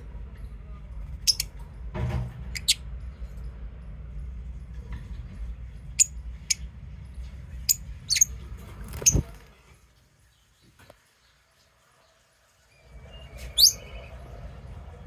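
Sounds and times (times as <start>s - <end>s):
low steady rumble: 0.0s - 9.4s, 12.8s - 15.0s
lovebirds chirping: 1.2s - 1.5s, 7.6s - 9.3s, 12.7s - 14.5s
thump: 1.9s - 2.4s.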